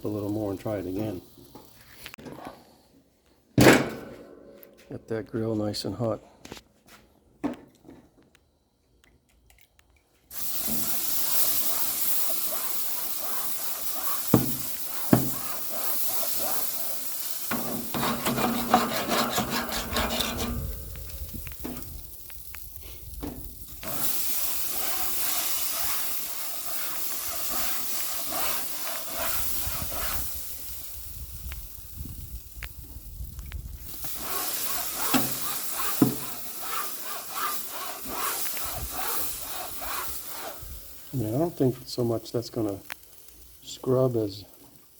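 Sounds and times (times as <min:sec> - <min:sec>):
steam hissing on hot grill: 0:10.3 - 0:44.9
brush knocking on grates: 0:14.0 - 0:15.6, 0:17.5 - 0:21.0, 0:35.0 - 0:36.4.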